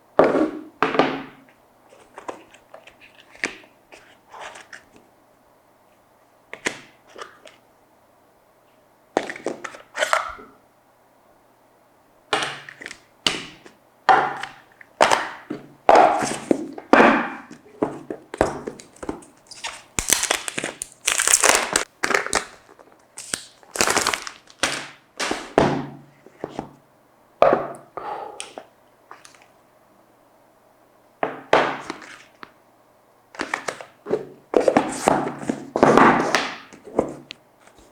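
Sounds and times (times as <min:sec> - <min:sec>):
cardboard packaging rustling: 0:17.6 - 0:25.6.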